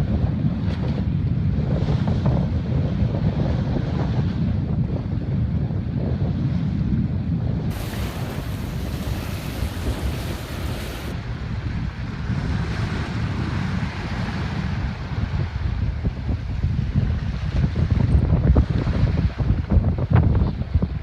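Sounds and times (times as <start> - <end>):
wind buffeting microphone: 0.0 - 21.0
water rushing along hull: 7.3 - 21.0.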